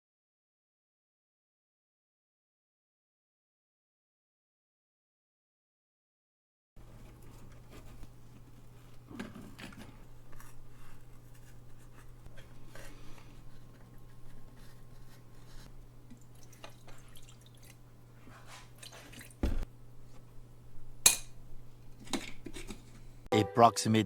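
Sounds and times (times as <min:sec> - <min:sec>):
hand tools scraping and tapping: 0:07.0 - 0:15.7, 0:21.0 - 0:23.2.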